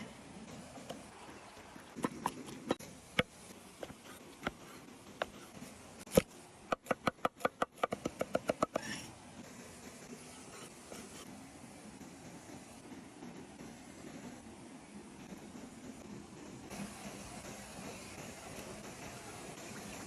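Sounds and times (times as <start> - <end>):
knife scraping board: 3.4 - 6.2, 8.5 - 9.1, 10.3 - 11.3.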